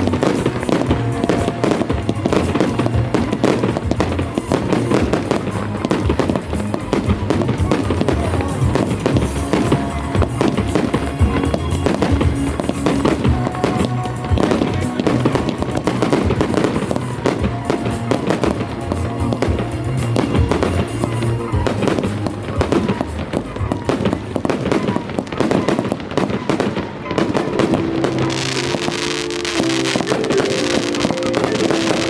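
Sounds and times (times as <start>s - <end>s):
fireworks bangs and crackles: 0.0s - 32.0s
loud music: 0.0s - 32.0s.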